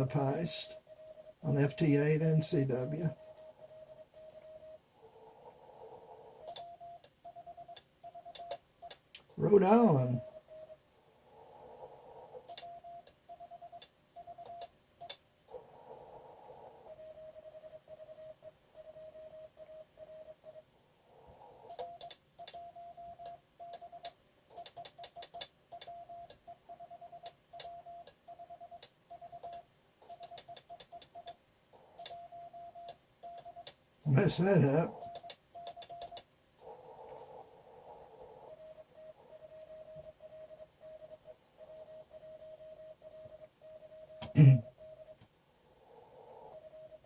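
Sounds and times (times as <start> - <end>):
morse code beeps: 0.0 - 4.8, 6.5 - 10.8, 12.5 - 15.2, 21.7 - 31.4, 32.0 - 36.2
sharp keying clicks: 6.4 - 9.4, 12.5 - 15.2, 21.7 - 26.6, 27.2 - 31.4, 32.0 - 32.2, 32.8 - 33.8, 35.0 - 36.3
radio receiver hiss: 34.0 - 35.2.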